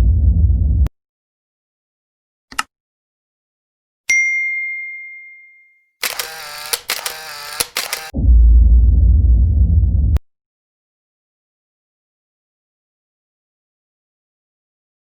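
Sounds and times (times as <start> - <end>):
loud low rumbling: 0.0 - 0.9, 8.2 - 10.2.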